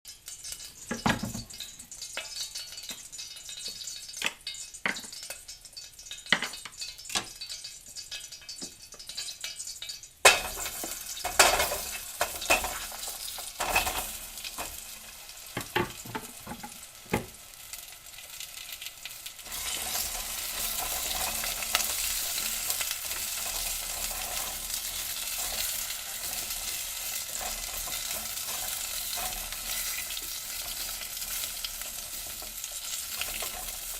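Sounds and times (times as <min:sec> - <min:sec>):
carrots sizzling in a pan: 0:00.1 - 0:33.9
utensil knocking and scraping pan: 0:15.6 - 0:17.3.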